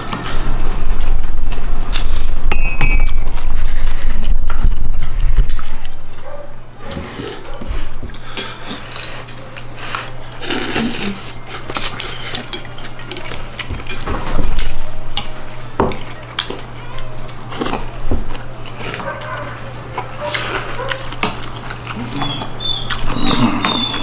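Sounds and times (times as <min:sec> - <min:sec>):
dishes and cutlery clinking: 0:11.0 - 0:24.0.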